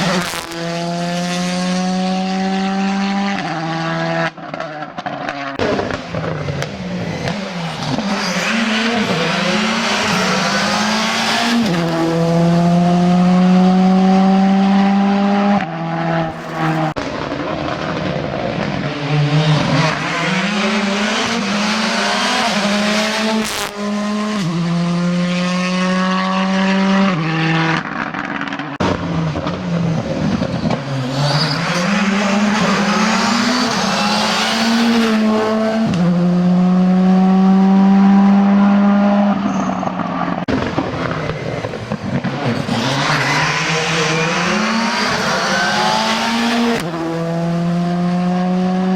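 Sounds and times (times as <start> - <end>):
rally car engines revving: 0.0 - 48.9
tyre squeal: 31.0 - 35.4, 39.4 - 40.3.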